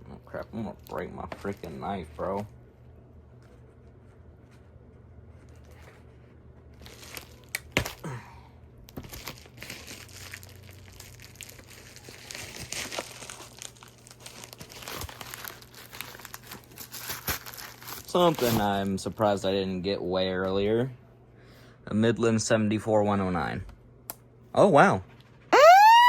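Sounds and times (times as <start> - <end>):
plastic wrap crinkling and tearing: 0.5 - 2.5, 5.3 - 8.2, 8.9 - 19.4.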